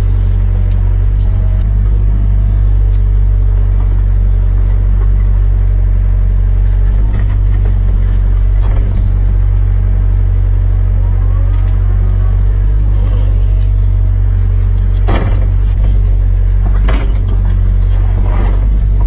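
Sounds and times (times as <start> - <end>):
excavator diesel engine running: 0.0 - 19.0
sharp machine knocks: 15.0 - 16.0.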